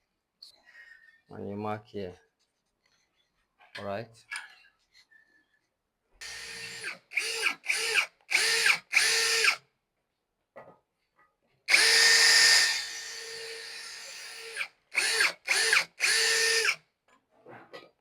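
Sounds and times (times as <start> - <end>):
electric drill whining: 6.2 - 9.6, 11.7 - 16.8.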